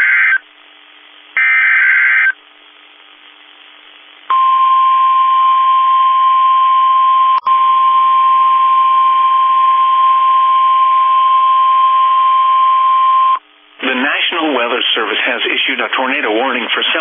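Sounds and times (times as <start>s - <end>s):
receiver hiss: 0.0s - 17.0s
steady high alarm tone: 1.4s - 2.4s.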